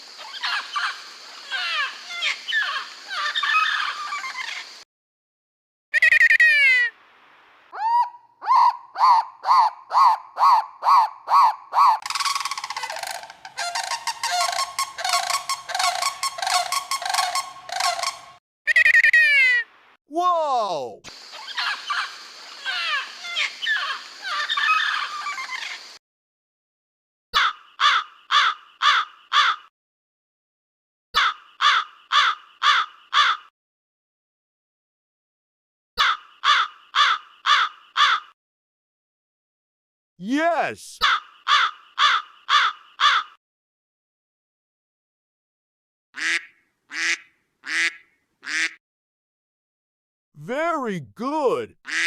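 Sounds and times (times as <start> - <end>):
goose gabbling calls: 12.2 - 18.3
goose honking: 13.6 - 18.2
crow cawing: 27.4 - 29.7, 31.2 - 33.5, 36.0 - 38.4, 41.0 - 43.4.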